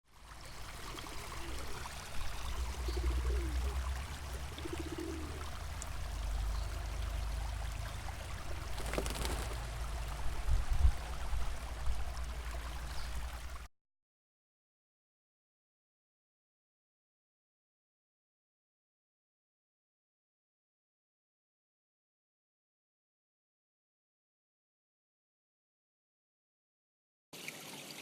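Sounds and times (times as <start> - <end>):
brook trickling and gurgling: 0.0 - 13.7, 27.4 - 28.0.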